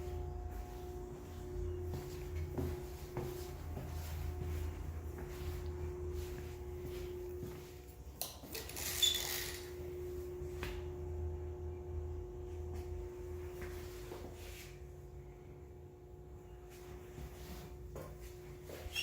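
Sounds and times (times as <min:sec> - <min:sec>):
low machine hum: 0:00.0 - 0:19.0
scraping squeaking noise: 0:08.7 - 0:09.7.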